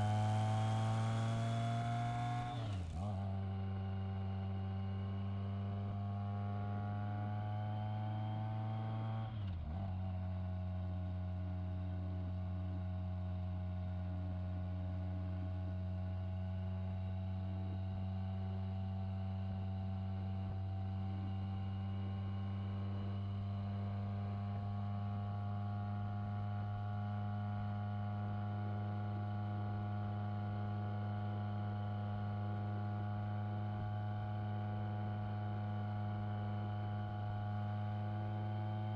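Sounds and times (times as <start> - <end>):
motorcycle engine running: 0.0 - 4.3.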